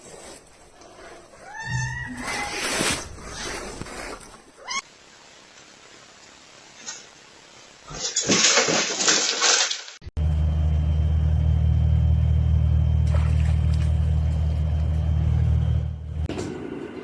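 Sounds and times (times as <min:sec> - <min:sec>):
loud low rumble: 0:10.2 - 0:16.3.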